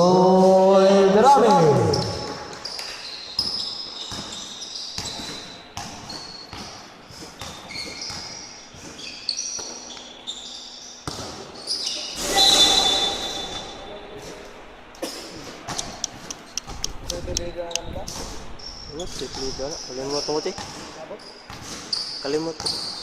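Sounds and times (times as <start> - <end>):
sneakers squeaking: 0.7 - 17.0, 17.7 - 23.0
basketball bouncing: 3.4 - 4.4, 5.0 - 9.0, 11.0 - 11.4, 19.1 - 20.9
shrill tone: 12.0 - 14.0.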